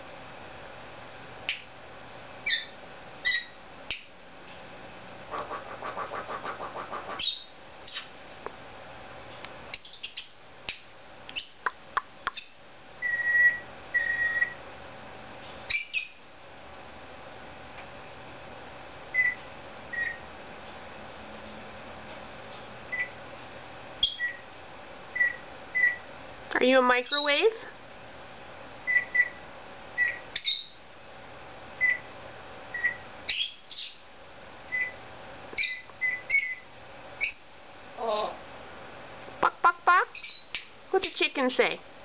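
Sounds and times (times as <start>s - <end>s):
parrot whistled chirps and clicks: 5.4s - 8.1s, 9.7s - 14.6s, 19.1s - 20.2s, 22.9s - 23.2s, 24.0s - 24.4s, 25.2s - 26.0s, 28.8s - 29.4s, 30.0s - 30.7s, 31.8s - 32.1s, 32.7s - 34.0s, 34.7s - 35.0s, 35.6s - 36.6s, 40.1s - 40.7s
parrot imitating microwave beeps: 12.3s - 14.6s, 19.1s - 20.2s, 22.9s - 23.2s, 24.0s - 24.4s, 25.1s - 26.1s, 28.8s - 29.4s, 30.0s - 30.7s, 31.8s - 32.1s, 32.7s - 33.9s, 34.7s - 35.0s, 35.6s - 36.6s.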